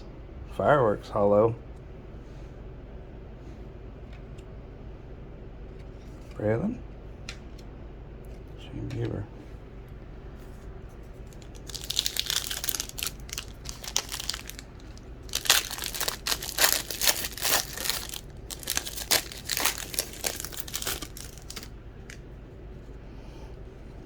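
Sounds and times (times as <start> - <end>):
wrapper crinkling and tearing: 11.2 - 22.2.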